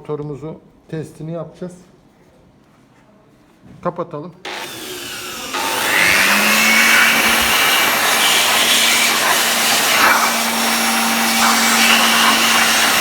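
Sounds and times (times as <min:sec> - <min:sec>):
vacuum cleaner motor whining: 0:04.5 - 0:13.0.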